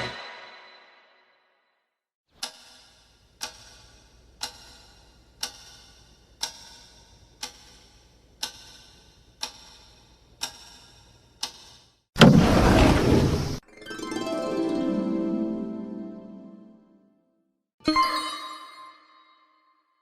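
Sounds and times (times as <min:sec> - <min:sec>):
clock ticking: 0:02.4 - 0:11.7.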